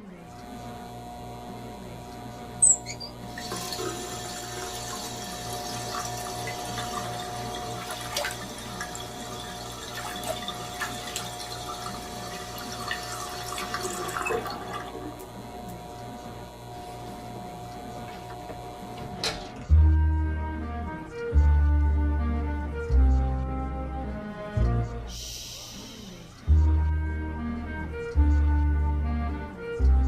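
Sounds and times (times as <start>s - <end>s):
low steady hum: 0.0s - 30.0s
tap water running into sink: 3.3s - 15.2s.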